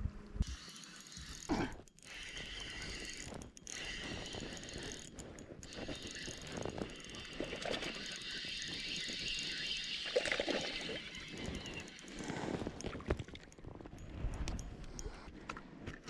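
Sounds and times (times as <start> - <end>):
fishing reel whirring and clicking: 0.4 - 16.0.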